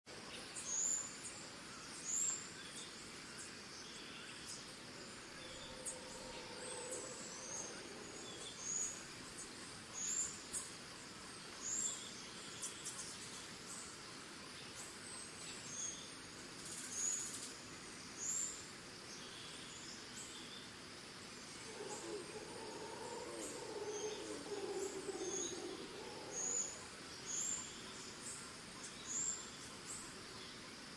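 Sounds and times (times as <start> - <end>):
crickets trilling: 4.8 - 12.0, 21.2 - 30.8
birds chirping: 4.9 - 10.2, 21.6 - 29.7.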